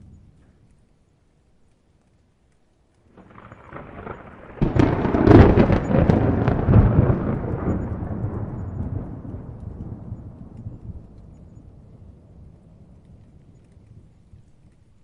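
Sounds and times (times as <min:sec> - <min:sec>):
thunder rumble and crackling clap: 0:03.1 - 0:15.0.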